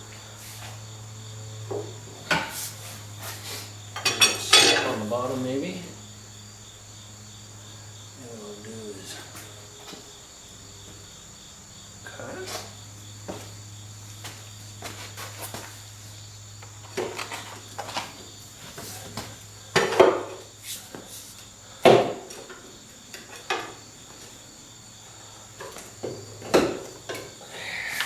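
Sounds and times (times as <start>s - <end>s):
metal tools clinking: 4.0s - 5.0s.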